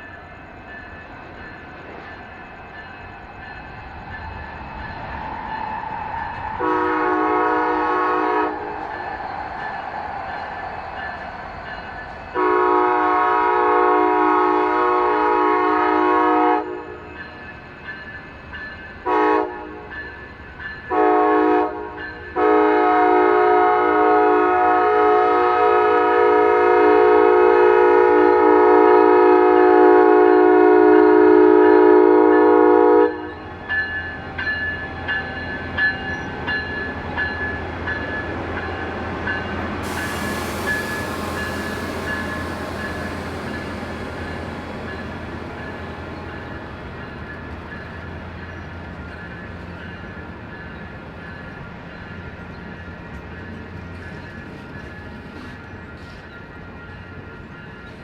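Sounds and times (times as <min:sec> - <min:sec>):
approaching train: 0:00.0 - 0:58.0
train air horn blasts: 0:06.6 - 0:08.8, 0:12.3 - 0:17.0, 0:19.0 - 0:19.9, 0:20.9 - 0:33.3, 0:39.5 - 0:47.2.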